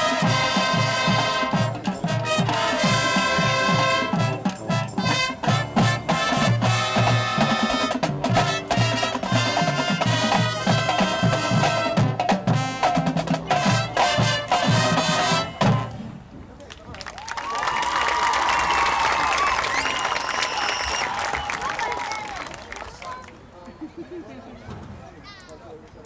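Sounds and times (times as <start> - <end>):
brass holding chords: 0.0 - 16.0
drumline rapid strokes: 0.0 - 16.2
marching band playing: 0.0 - 16.3.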